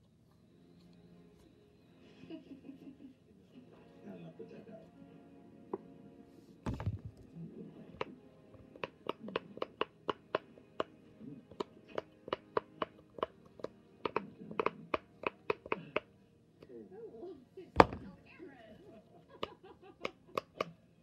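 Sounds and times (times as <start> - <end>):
handling thump: 6.7 - 7.3, 17.8 - 18.2.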